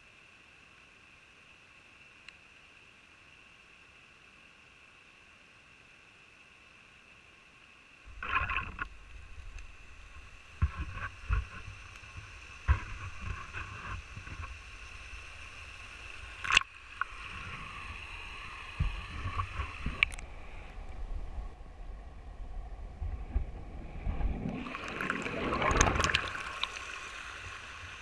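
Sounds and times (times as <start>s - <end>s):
wind rumble on microphone: 17.2s - 26.3s.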